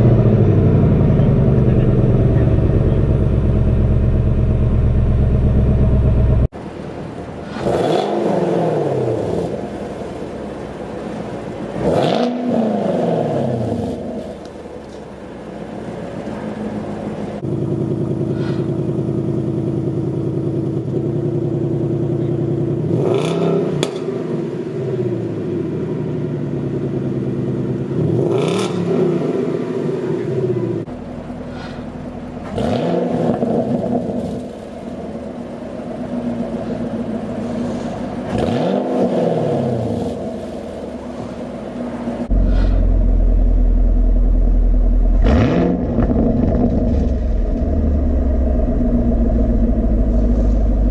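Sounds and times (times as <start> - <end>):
car engine idling and revving: 0.0 - 50.9.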